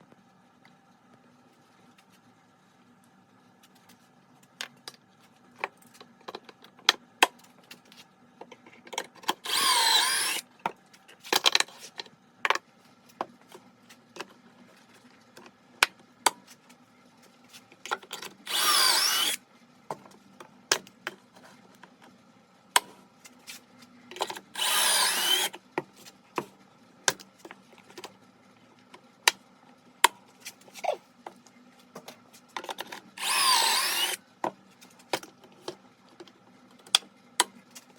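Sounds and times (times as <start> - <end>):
power drill whining: 9.4 - 10.4, 18.5 - 19.4, 24.6 - 25.5, 33.2 - 34.2.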